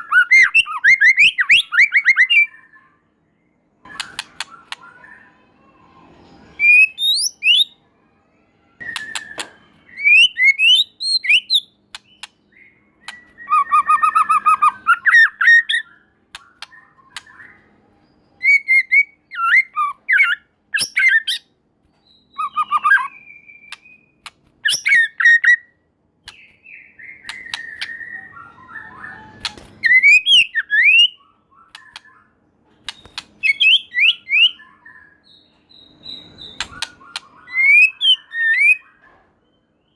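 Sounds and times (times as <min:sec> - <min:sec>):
sharp clicks: 0:03.9 - 0:04.8, 0:11.9 - 0:12.4, 0:16.3 - 0:17.4, 0:26.2 - 0:26.6, 0:27.2 - 0:28.0, 0:31.7 - 0:32.1, 0:32.8 - 0:33.6, 0:36.6 - 0:37.3
bird singing varied whistles: 0:08.8 - 0:17.7, 0:26.3 - 0:32.3, 0:32.9 - 0:38.9.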